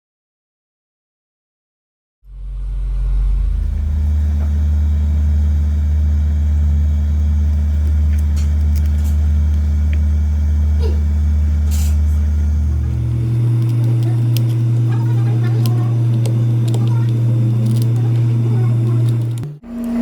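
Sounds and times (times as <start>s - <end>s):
deep droning hum: 2.3s - 20.0s.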